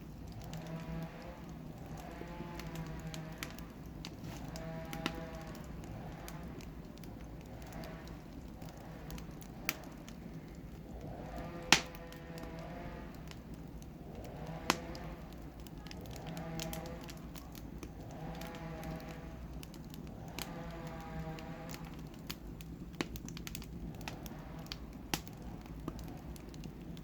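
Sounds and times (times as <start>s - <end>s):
wood fire crackling: 0.0s - 27.0s
sharp fire pops: 0.1s - 27.0s.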